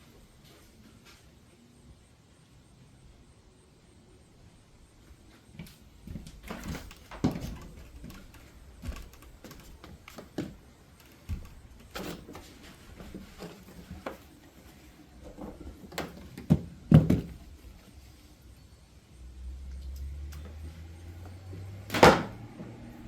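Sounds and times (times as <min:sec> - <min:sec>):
hard objects knocking and clunking: 0:15.3 - 0:17.5.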